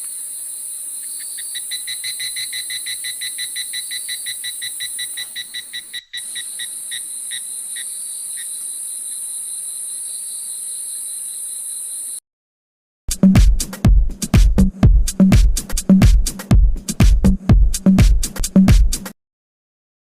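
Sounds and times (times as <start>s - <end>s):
insects buzzing: 0.0s - 12.2s
rapid chirping call: 1.0s - 9.3s.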